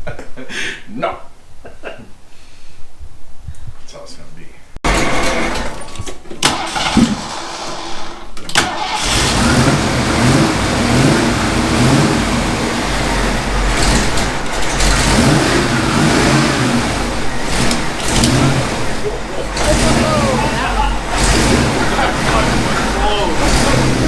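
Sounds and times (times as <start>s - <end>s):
car engine running: 8.8s - 24.0s.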